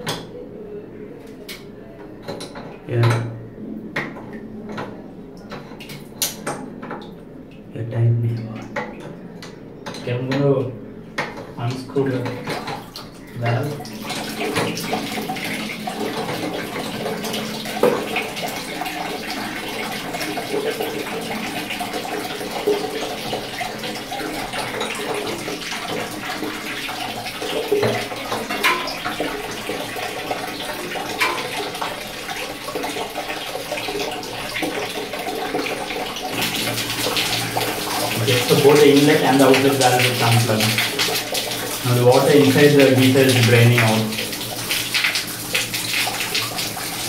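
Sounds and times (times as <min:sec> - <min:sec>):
water running from a tank: 0:11.2 - 0:47.0.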